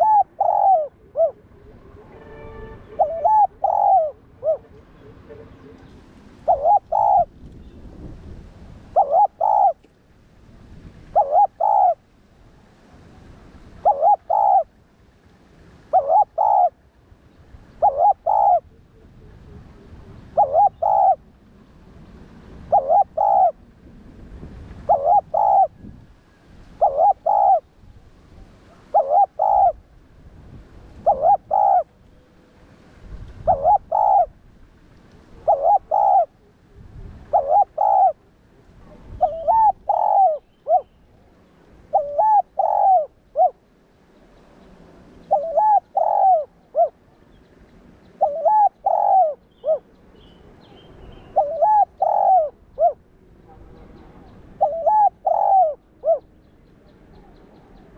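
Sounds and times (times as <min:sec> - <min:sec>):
dove cooing: 0:00.0 - 0:07.4, 0:08.9 - 0:09.9, 0:11.1 - 0:12.0, 0:13.8 - 0:14.7, 0:15.9 - 0:16.8, 0:17.8 - 0:21.3, 0:22.6 - 0:23.7, 0:24.8 - 0:25.9, 0:26.8 - 0:27.7, 0:28.7 - 0:29.8, 0:31.0 - 0:32.0, 0:33.4 - 0:34.4, 0:35.3 - 0:41.0, 0:41.9 - 0:43.6, 0:45.2 - 0:47.0, 0:48.2 - 0:50.0, 0:50.6 - 0:57.9.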